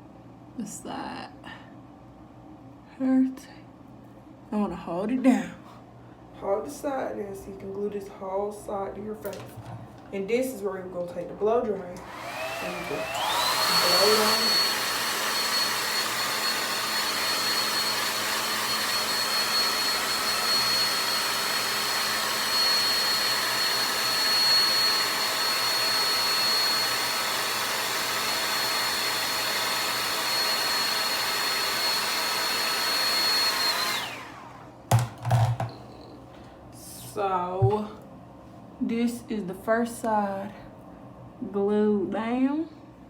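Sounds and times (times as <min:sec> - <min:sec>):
blow dryer motor whine: 0:12.0 - 0:36.1.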